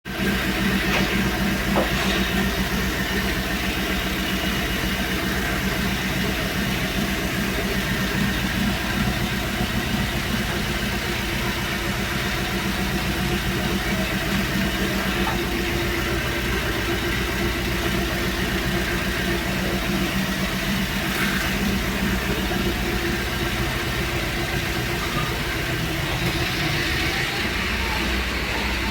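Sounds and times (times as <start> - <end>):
car engine idling: 0.0 - 28.9.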